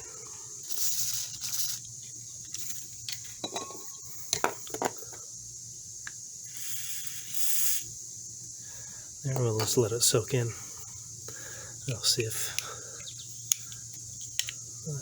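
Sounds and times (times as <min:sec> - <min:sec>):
aerosol can spraying: 0:06.5 - 0:07.9.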